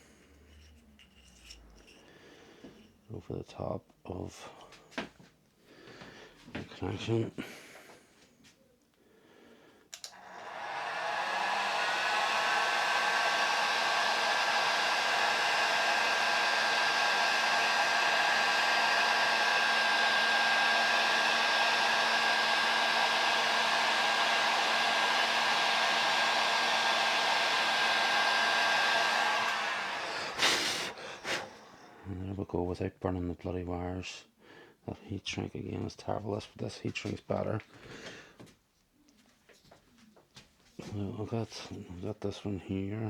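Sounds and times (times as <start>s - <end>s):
heat gun blowing air: 10.0s - 31.9s
heat gun high whine: 10.1s - 31.5s.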